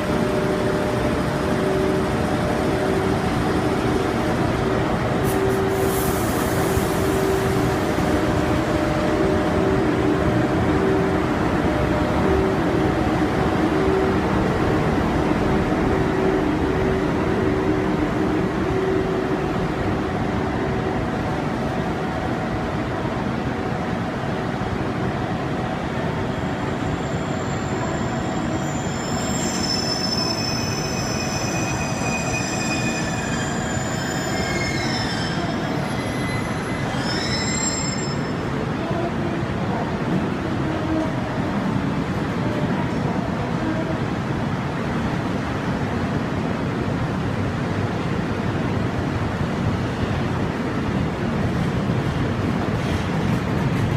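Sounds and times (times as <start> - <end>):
train wheels rumbling on rails: 0.0 - 53.9
high-pitched wheel squeals: 26.9 - 38.5.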